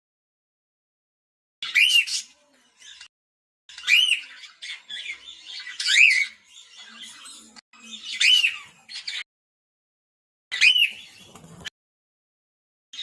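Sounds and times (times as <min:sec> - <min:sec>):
soft bird chatter: 0:01.6 - 0:03.1, 0:03.7 - 0:09.3, 0:10.5 - 0:11.7
cockatiel whistled calls: 0:03.8 - 0:06.4, 0:10.5 - 0:11.1.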